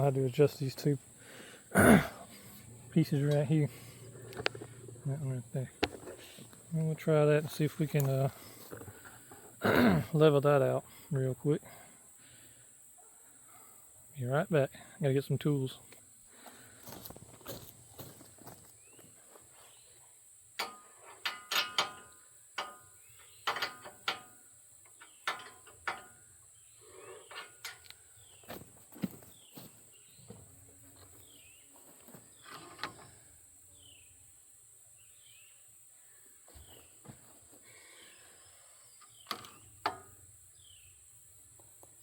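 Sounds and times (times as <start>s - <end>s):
knocks and metallic clinks: 20.6s - 26.4s.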